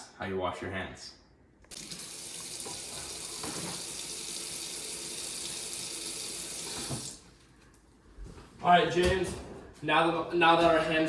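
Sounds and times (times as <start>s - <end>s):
tap running into sink: 1.7s - 4.4s, 5.4s - 7.2s.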